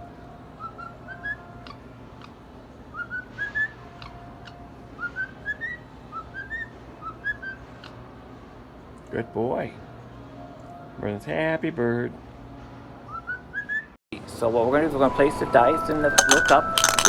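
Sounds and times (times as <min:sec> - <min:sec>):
cockatiel whistling: 0:00.6 - 0:01.8, 0:02.9 - 0:07.9, 0:13.1 - 0:14.0.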